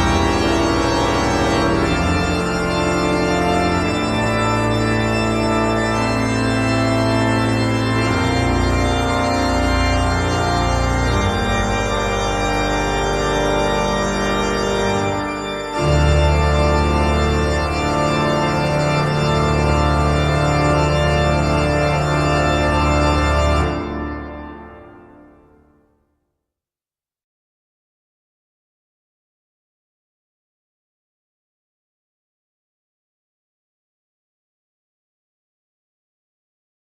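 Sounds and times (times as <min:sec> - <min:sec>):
organ chords: 0:00.0 - 0:25.9.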